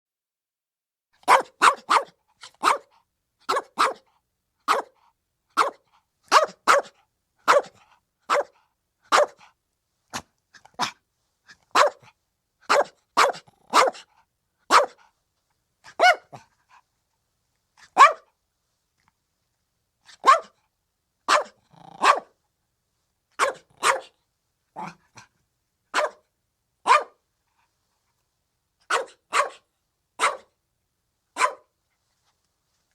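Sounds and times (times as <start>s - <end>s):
puppy barking: 1.2s - 4.1s, 4.7s - 5.0s, 5.6s - 9.5s, 10.2s - 11.0s, 11.7s - 14.1s, 14.7s - 15.1s, 15.9s - 16.4s, 17.8s - 18.3s, 20.1s - 20.6s, 21.3s - 22.4s, 23.4s - 24.2s, 25.9s - 27.2s, 28.8s - 30.6s, 31.4s - 31.7s.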